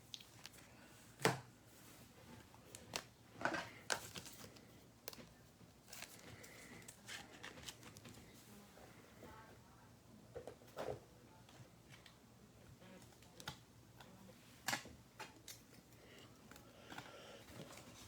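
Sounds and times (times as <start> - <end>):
cards being handled: 2.7 - 8.3.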